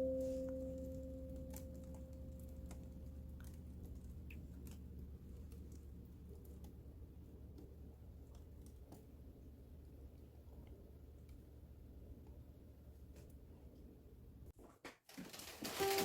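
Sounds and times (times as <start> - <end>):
background music note: 0.0 - 3.6, 15.8 - 16.0
low steady hum: 0.0 - 14.5.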